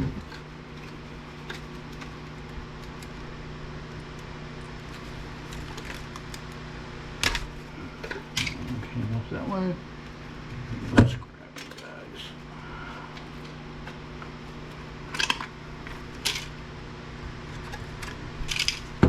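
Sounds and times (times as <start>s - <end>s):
steady low hum: 0.0s - 19.0s
circuit boards clicking and clattering: 7.2s - 8.8s, 15.1s - 16.5s, 17.6s - 19.0s.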